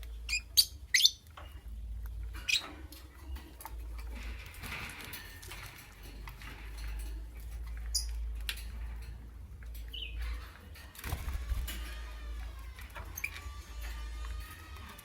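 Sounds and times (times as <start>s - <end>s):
lovebirds chirping: 0.0s - 4.1s, 7.7s - 8.5s, 9.8s - 10.4s.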